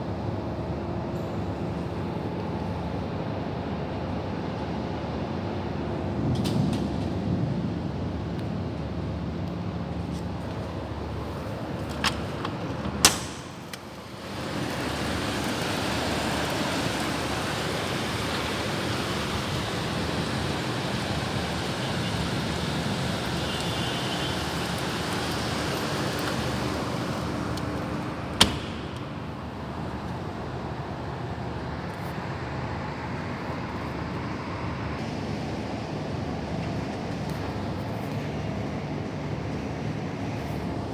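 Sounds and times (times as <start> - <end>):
storm wind and rain rushing: 13.6 - 30.7.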